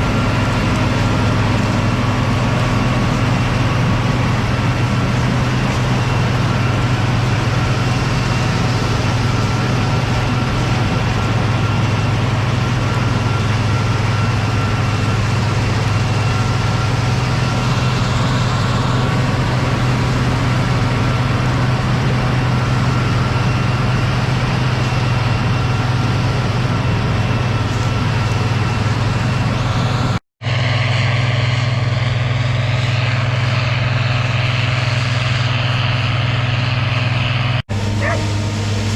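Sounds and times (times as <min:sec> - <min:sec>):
combine harvester engine droning: 0:00.0 - 0:38.9.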